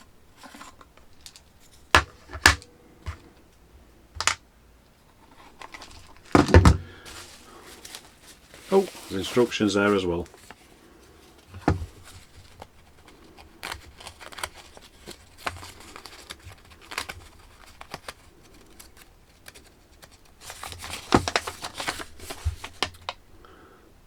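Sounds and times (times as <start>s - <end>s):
paper and packaging rustling: 5.1s - 23.2s.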